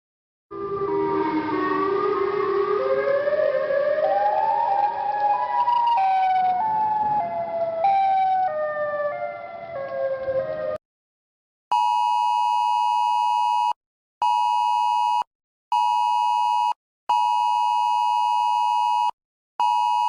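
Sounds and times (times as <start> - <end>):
siren-style emergency alarm tone: 0.5 - 10.8.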